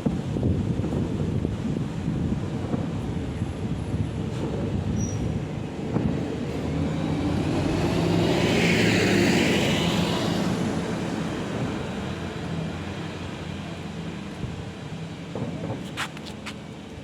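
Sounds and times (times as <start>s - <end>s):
vehicle passing by: 6.0s - 13.9s.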